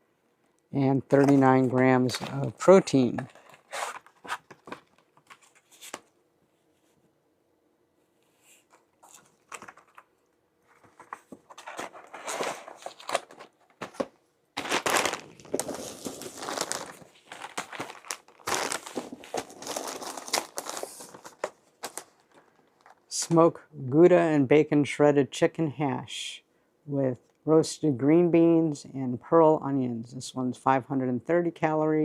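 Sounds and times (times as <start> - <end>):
packaging crinkling and rustling: 1.1 - 6.1, 8.6 - 23.1.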